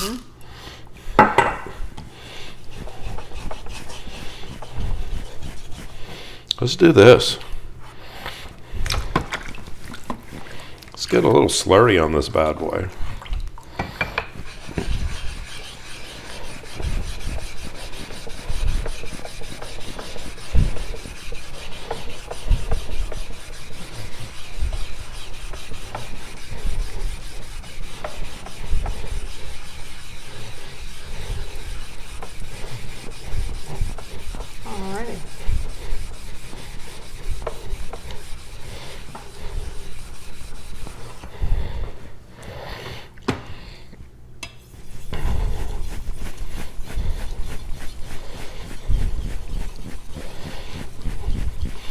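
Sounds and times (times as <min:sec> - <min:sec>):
knife scraping on water stone: 0:02.7 - 0:06.0, 0:13.9 - 0:41.3, 0:44.7 - 0:51.9.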